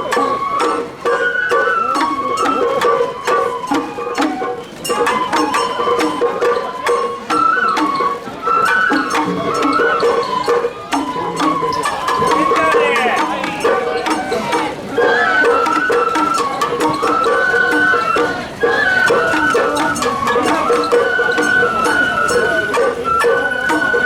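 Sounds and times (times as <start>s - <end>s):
drum strikes: 0.0s - 24.0s
high bamboo flute melody: 0.0s - 24.0s.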